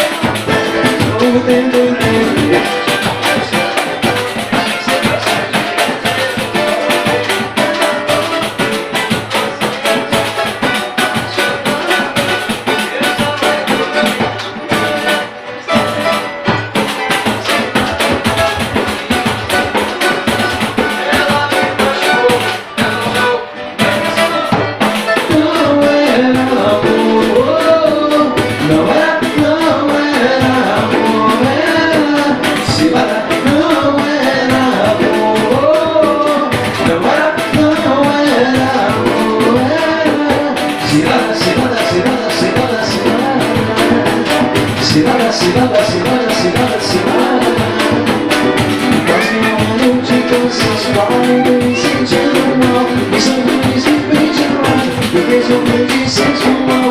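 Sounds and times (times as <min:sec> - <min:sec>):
samba band playing: 0:00.0 - 0:56.9.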